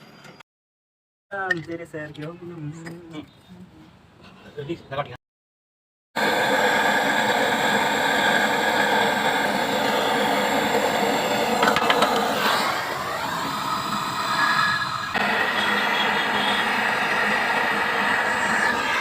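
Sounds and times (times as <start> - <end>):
machine running with tones: 6.2 - 19.0.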